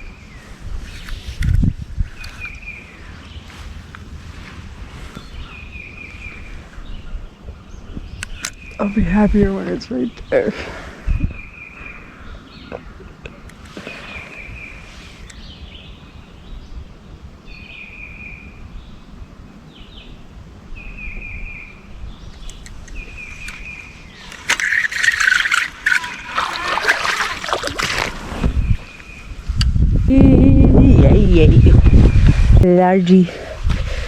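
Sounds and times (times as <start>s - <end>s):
songbird trilling: 20.8s - 28.0s.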